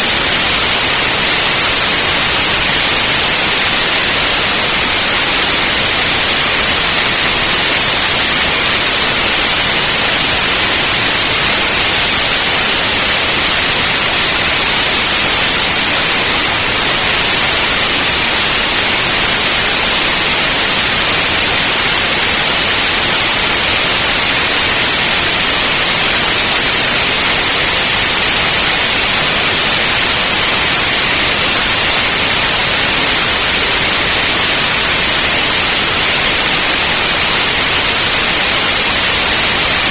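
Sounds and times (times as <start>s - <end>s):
white noise hiss: 0.0s - 39.9s.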